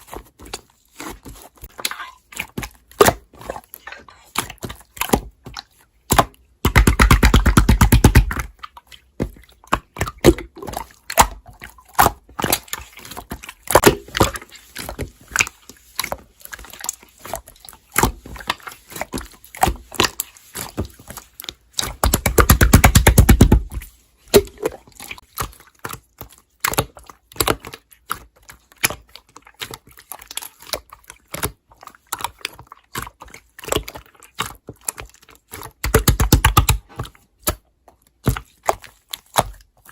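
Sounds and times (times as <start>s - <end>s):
wet clicks and pops of slime: 33.6s - 36.8s.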